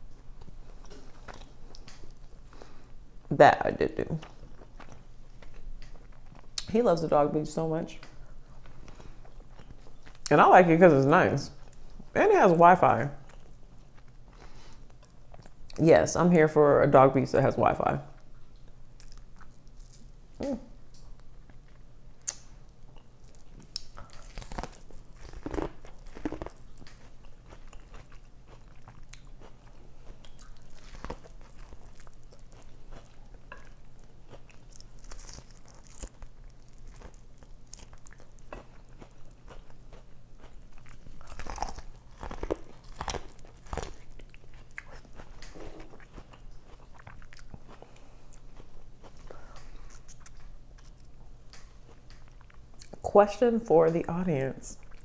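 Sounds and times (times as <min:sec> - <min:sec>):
person chewing and biting food: 0:00.1 - 0:03.0, 0:18.2 - 0:53.0.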